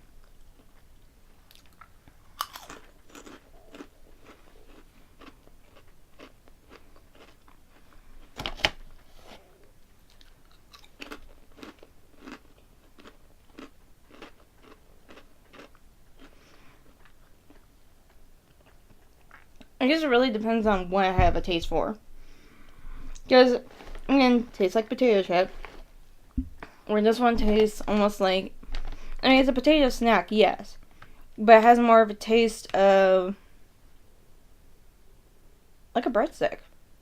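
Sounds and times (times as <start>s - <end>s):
chewing crunchy potato chips: 0.2s - 8.3s, 10.0s - 19.7s.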